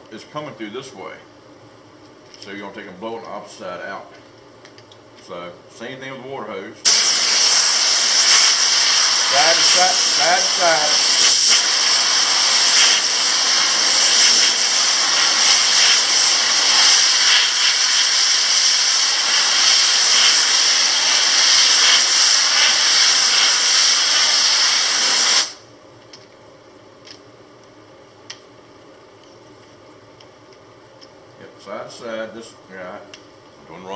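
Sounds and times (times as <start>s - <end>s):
compressed air blow gun hissing: 6.9s - 25.6s.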